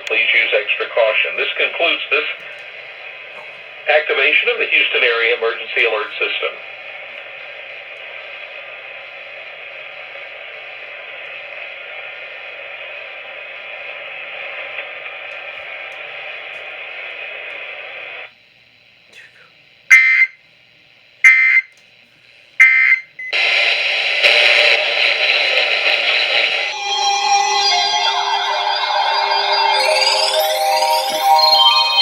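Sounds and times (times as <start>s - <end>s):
loud static noise: 0.0s - 18.4s, 21.2s - 32.0s
radio hiss: 0.0s - 18.4s, 21.2s - 28.6s
warbling alert data tones: 26.6s - 32.0s.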